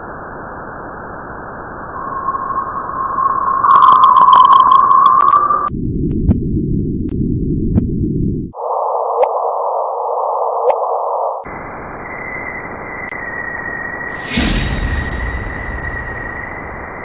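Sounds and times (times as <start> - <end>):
steady high whistle: 1.9 - 5.1, 12.0 - 17.0
steady low tone: 14.1 - 17.0.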